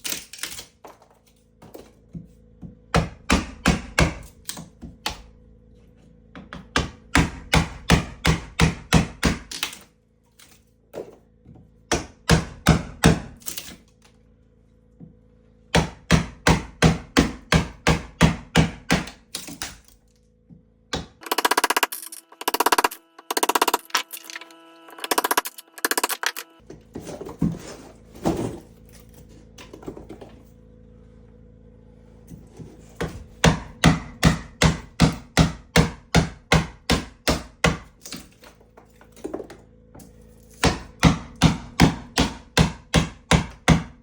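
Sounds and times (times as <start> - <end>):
whirring tool: 21.2 - 26.7.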